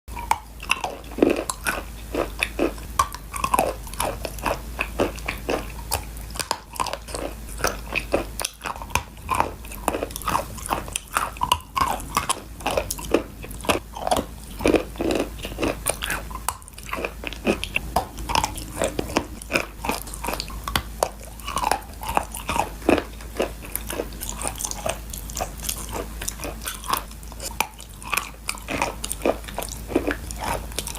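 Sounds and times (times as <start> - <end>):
crunching and chewing clay: 0.1 - 30.9.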